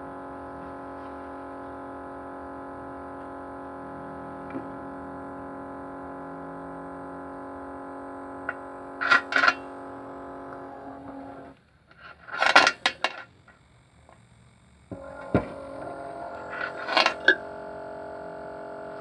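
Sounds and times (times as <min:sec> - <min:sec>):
vibration motor buzzing hum: 0:00.0 - 0:19.0
rattling bursts: 0:09.0 - 0:09.7, 0:12.0 - 0:13.3, 0:15.0 - 0:19.0.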